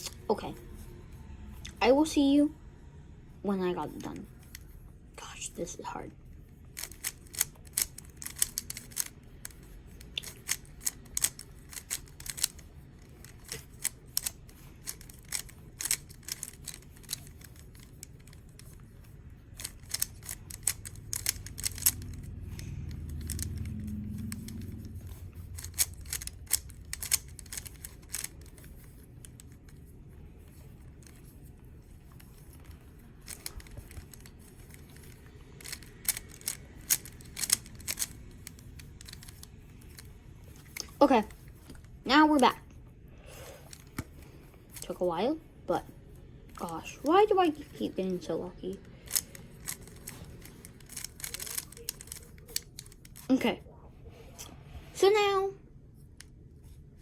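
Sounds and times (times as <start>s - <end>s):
puzzle cube layers clicking: 6.7s - 42.5s, 48.8s - 53.3s
low dull rumble: 20.4s - 28.5s.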